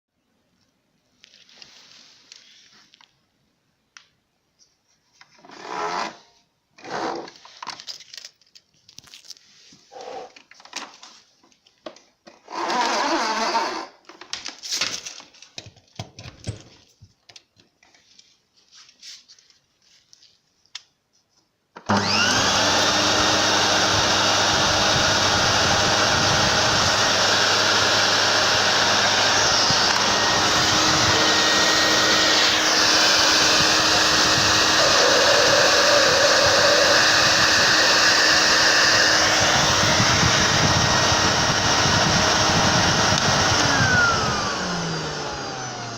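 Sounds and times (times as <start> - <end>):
vacuum cleaner motor whine: 21.8 - 45.9.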